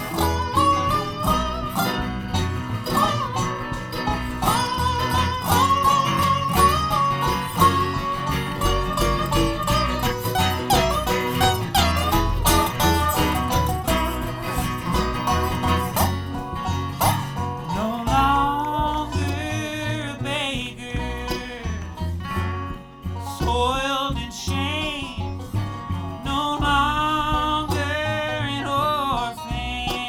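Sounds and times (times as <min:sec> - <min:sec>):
acoustic bluegrass band playing: 0:00.0 - 0:30.0.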